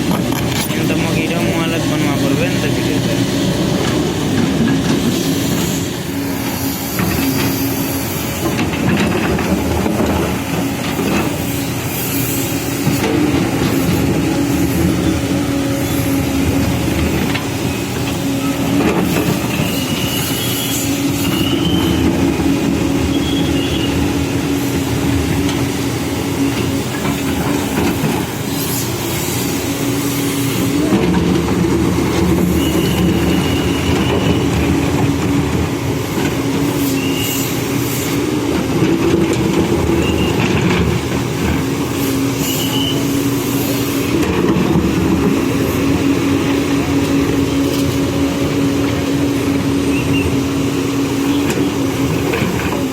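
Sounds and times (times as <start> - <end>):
diesel engine running: 0.0 - 52.9
short high squeals: 36.8 - 37.6, 42.4 - 43.2.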